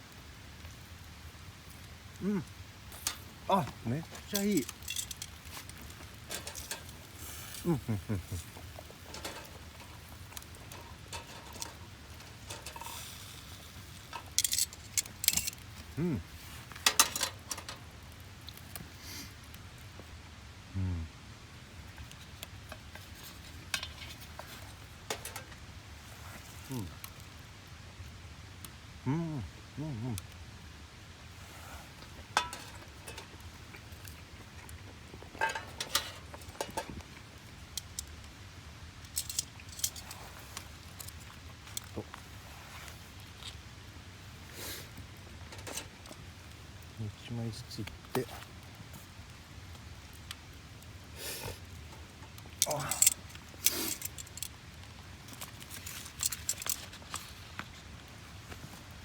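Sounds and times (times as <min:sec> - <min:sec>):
campfire kindling crackling: 0:00.0 - 0:59.0
gear clinking and rattling: 0:03.0 - 0:07.1, 0:09.0 - 0:13.0, 0:14.1 - 0:15.7, 0:35.4 - 0:36.9, 0:39.1 - 0:40.4, 0:52.6 - 0:54.6, 0:55.3 - 0:57.4.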